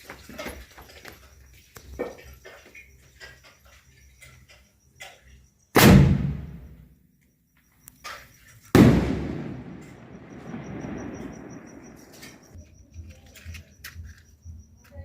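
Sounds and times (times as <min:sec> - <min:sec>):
firecracker bangs: 0:05.8 - 0:06.8, 0:08.8 - 0:12.6.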